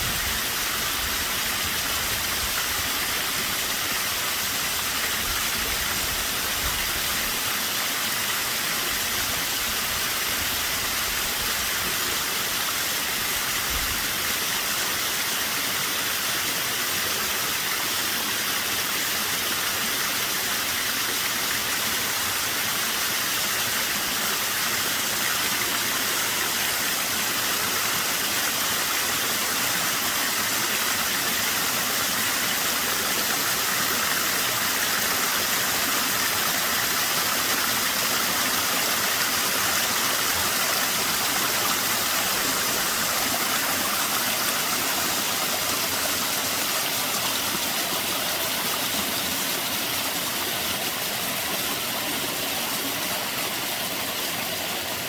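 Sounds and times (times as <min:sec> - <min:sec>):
waterfall rushing: 0:23.6 - 0:55.0.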